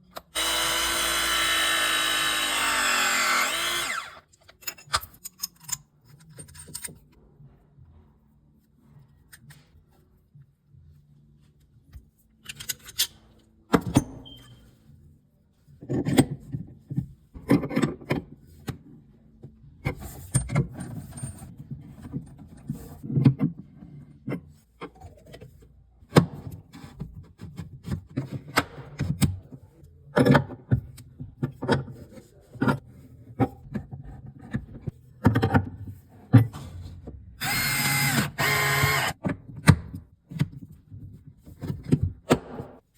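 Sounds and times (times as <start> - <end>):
cordless power tool motor: 0.2 - 4.2, 37.4 - 39.2.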